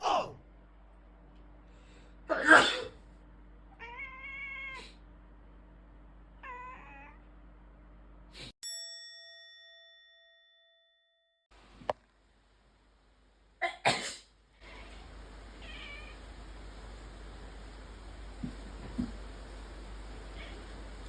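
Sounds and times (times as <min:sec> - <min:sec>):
person sneezing loudly: 0:02.3 - 0:03.0
cat meowing: 0:03.7 - 0:05.0, 0:06.4 - 0:07.3, 0:14.6 - 0:16.3, 0:20.2 - 0:20.9
bell-like ding: 0:08.6 - 0:11.4.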